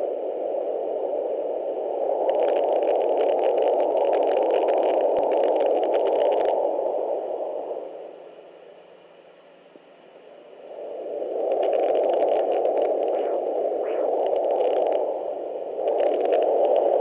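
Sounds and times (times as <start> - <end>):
scratchy crackling: 11.6 - 15.0
doppler whooshing noise: 13.0 - 14.6.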